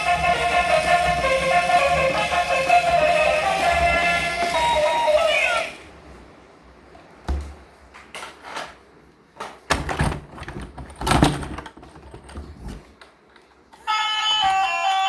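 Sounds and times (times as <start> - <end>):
objects clicking and knocking: 9.4 - 13.2.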